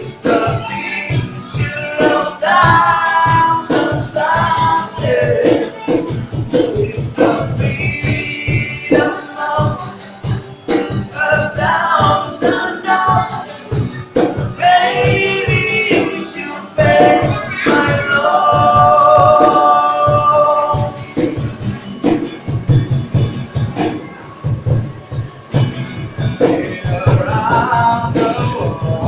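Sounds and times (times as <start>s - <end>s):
person singing: 0.0s - 21.5s, 26.4s - 29.0s
tambourine shaking: 0.0s - 22.4s
small live band: 0.0s - 29.0s.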